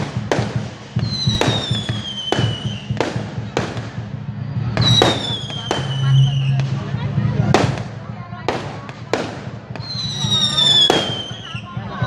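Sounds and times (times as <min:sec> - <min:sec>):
firework bangs: 0:00.0 - 0:12.0
whistling firework: 0:00.0 - 0:12.0.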